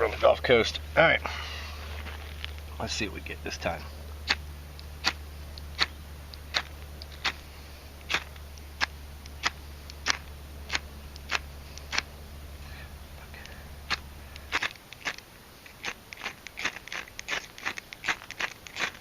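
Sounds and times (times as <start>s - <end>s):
fire striker scraping: 13.4s - 19.0s.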